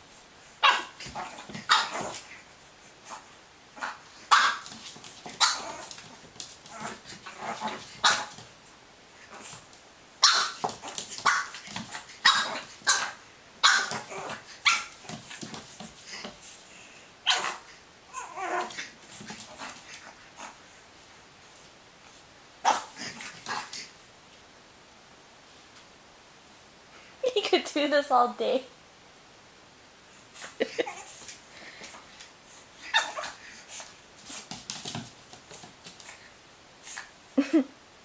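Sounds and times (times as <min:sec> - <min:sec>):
dog barking: 0:00.6 - 0:00.9, 0:12.2 - 0:14.0.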